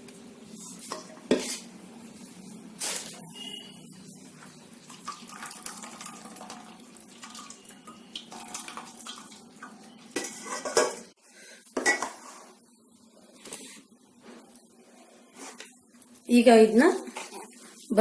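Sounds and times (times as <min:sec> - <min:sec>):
metal utensils clinking and scraping: 0:10.2 - 0:11.1.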